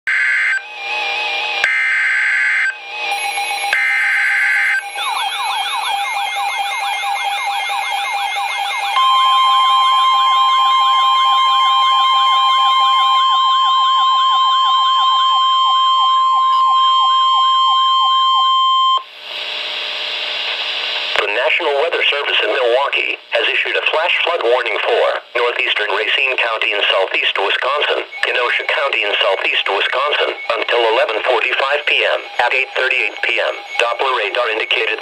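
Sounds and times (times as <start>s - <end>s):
steady alarm tone: 0.1s - 19.0s, 27.5s - 35.0s
warbling data tones: 27.6s - 35.0s.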